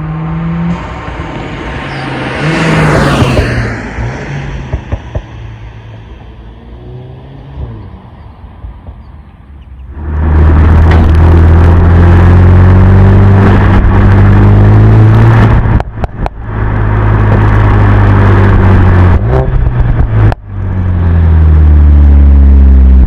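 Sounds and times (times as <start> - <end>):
car engine running loud: 0.0 - 23.0
exhaust pops and crackles: 10.2 - 11.9, 15.3 - 20.8.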